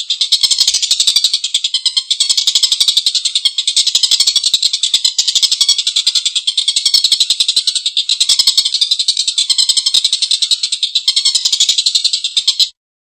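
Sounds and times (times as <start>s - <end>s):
kingfisher chattering call: 0.0s - 12.8s.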